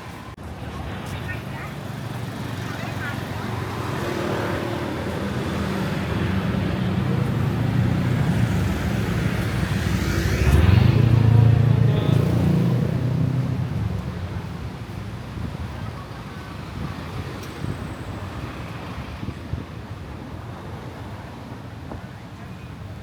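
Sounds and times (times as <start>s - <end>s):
road traffic: 0.0s - 23.0s
vehicle engine passing close: 3.0s - 14.0s.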